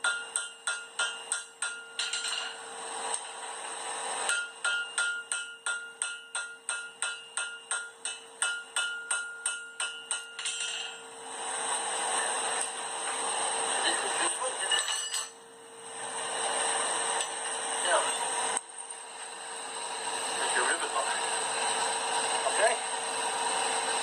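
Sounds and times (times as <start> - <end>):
hammer ringing on anvil: 0.0 - 2.6, 4.3 - 11.1, 14.8 - 15.4.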